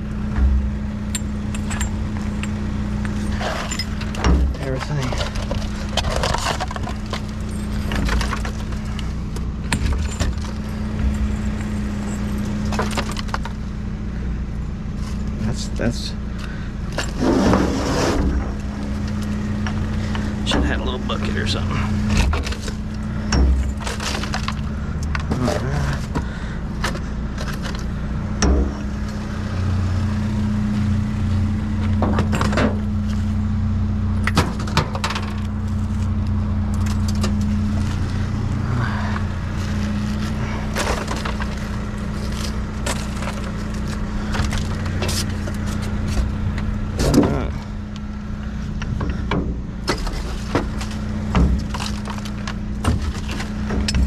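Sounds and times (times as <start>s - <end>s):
vehicle engine idling: 0.0s - 54.0s
small metal pieces clinking: 1.1s - 4.2s.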